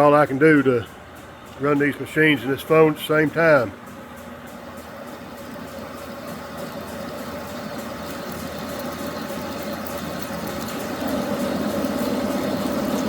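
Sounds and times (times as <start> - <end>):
metal lathe humming: 4.6 - 13.0.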